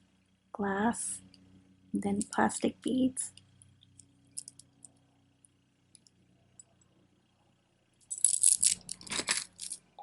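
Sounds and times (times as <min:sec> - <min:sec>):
beads rattling and clinking: 0:04.3 - 0:04.9, 0:08.0 - 0:10.0.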